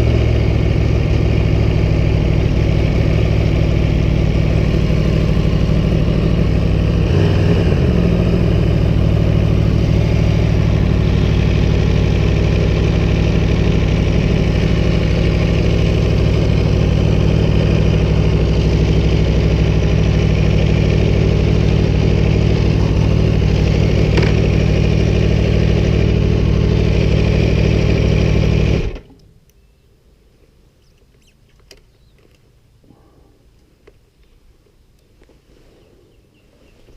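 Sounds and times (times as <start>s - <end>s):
motorcycle engine idling: 0.0s - 29.2s.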